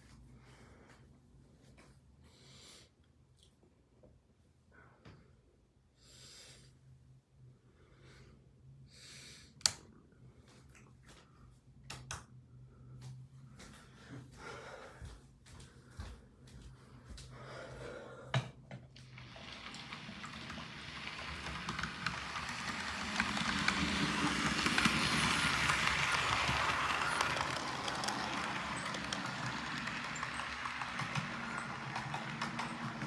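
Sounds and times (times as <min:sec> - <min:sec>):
train rumbling and clattering past: 0:19.0 - 0:33.0.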